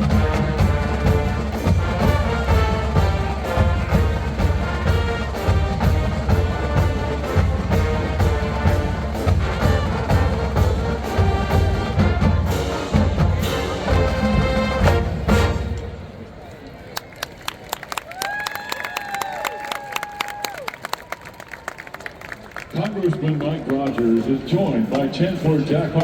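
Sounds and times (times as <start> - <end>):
marching drum beat: 0.0 - 15.8
brass playing: 0.0 - 16.2.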